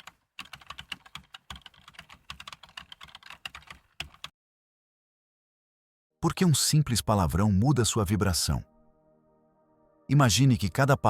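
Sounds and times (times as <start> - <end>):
rapid typing on keyboard: 0.0 - 4.3.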